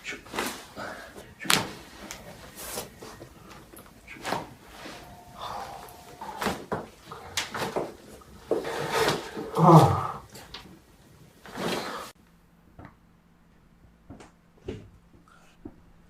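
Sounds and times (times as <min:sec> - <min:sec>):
person breathing: 0:00.6 - 0:07.4.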